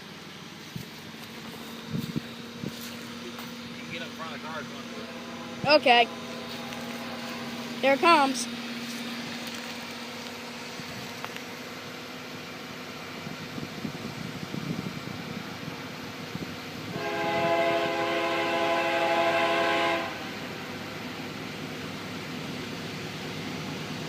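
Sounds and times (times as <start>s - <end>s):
train rumble: 0.0s - 24.0s
locomotive air horn blast: 16.8s - 20.7s.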